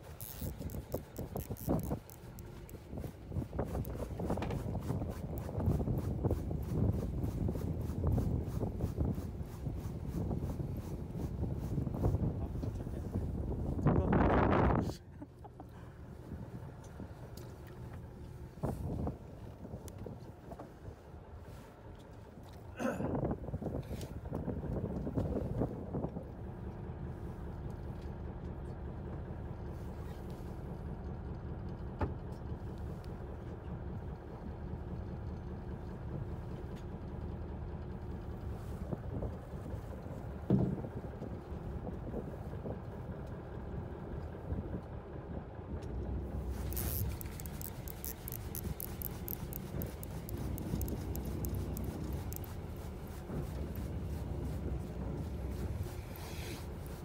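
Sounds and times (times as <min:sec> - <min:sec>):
boat engine humming: 0:00.0 - 0:57.0
rapid fine rattling: 0:46.4 - 0:57.0.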